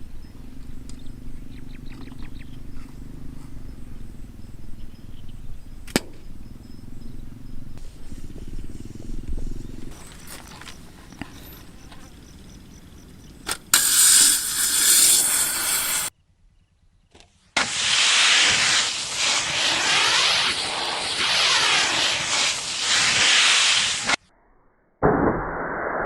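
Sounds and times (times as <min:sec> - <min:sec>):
loud hissing: 0:07.8 - 0:16.1, 0:17.6 - 0:24.2.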